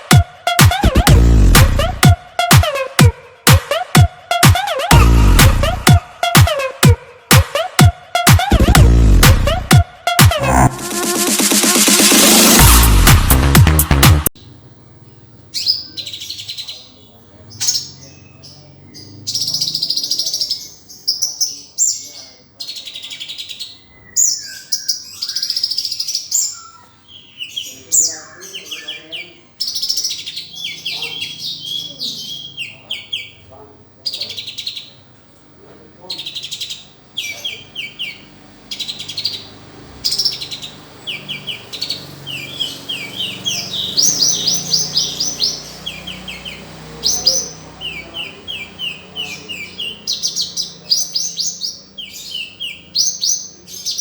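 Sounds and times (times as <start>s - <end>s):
sunbird singing rapid chirps: 14.4s - 35.0s, 36.0s - 54.0s.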